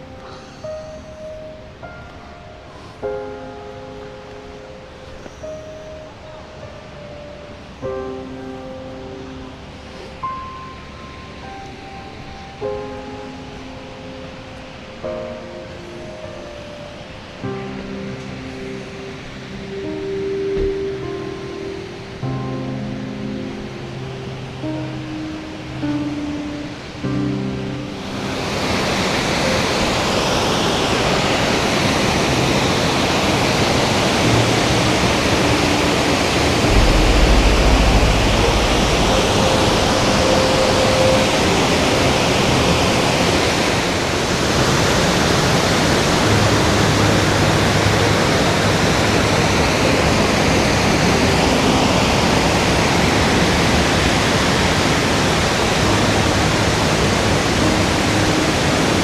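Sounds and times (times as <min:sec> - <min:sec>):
waterfall rushing: 0:28.0 - 0:59.0
low rumble: 0:36.6 - 0:41.8.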